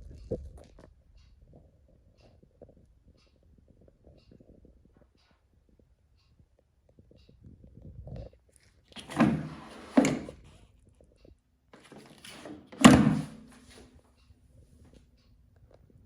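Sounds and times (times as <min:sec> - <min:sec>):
washing machine lid slam: 0:12.3 - 0:13.5.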